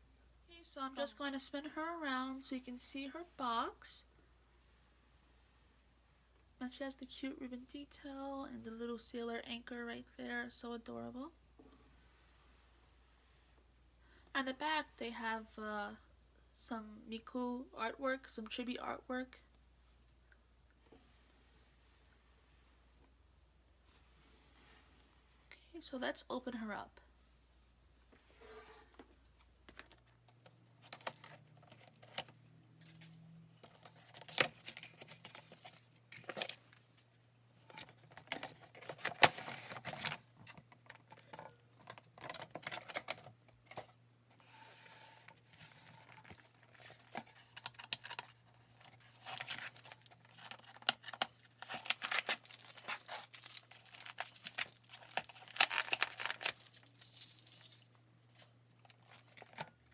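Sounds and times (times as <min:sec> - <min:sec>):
packaging rustling and tearing: 0:33.6 - 0:37.0, 0:45.4 - 0:58.0.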